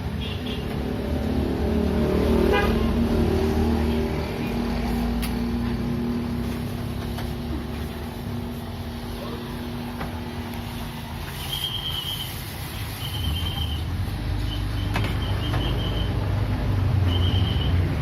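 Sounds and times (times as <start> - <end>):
road traffic rumble: 0.0 - 18.0.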